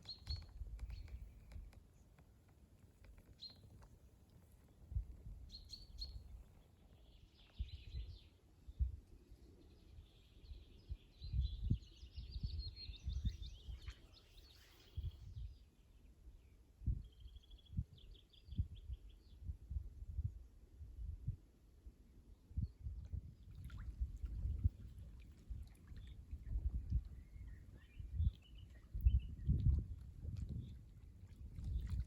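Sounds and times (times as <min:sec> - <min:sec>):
songbirds chirping: 0:00.0 - 0:08.4, 0:22.8 - 0:32.0.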